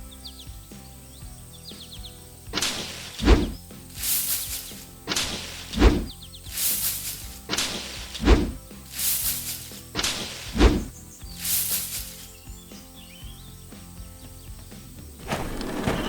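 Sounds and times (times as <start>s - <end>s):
light background music: 0.0s - 16.0s
high hiss: 2.5s - 12.5s
cartoon whoosh: 2.6s - 3.6s
heavy thud: 2.6s - 3.6s.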